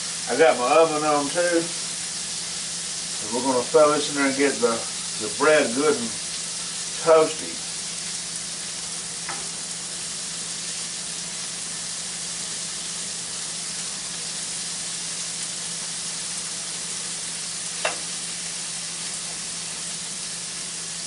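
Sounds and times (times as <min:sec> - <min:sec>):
ham sizzling on a griddle: 0:00.0 - 0:21.0.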